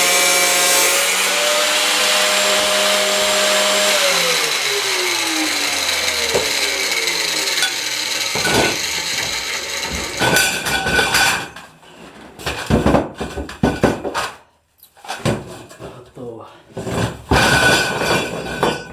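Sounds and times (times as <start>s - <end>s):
angle grinder winding down: 0.0s - 11.0s
knocks and rubbing of tool handling: 2.2s - 11.6s.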